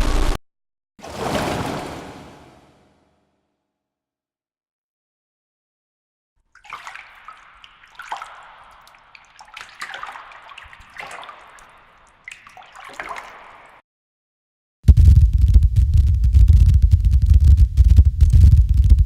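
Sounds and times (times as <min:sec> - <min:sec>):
watery noise swells with crackles: 0:01.0 - 0:02.7, 0:06.5 - 0:13.8
loud low rumble: 0:14.9 - 0:19.0.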